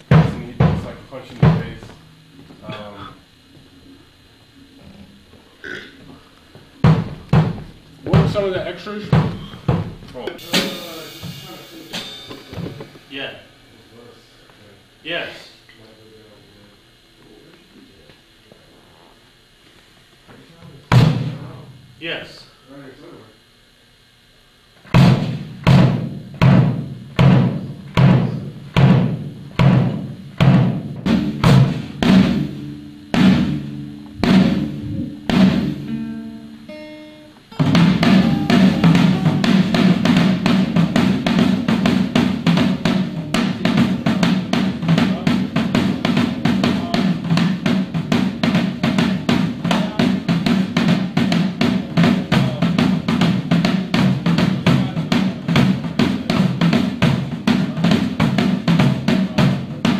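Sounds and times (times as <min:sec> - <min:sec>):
fast busy drumming: 0:00.0 - 0:03.2, 0:06.6 - 0:14.1, 0:20.9 - 0:22.3, 0:24.9 - 0:36.3, 0:37.5 - 0:59.9
ringing drum strokes: 0:00.0 - 0:03.4, 0:06.8 - 0:15.6, 0:25.0 - 0:59.9.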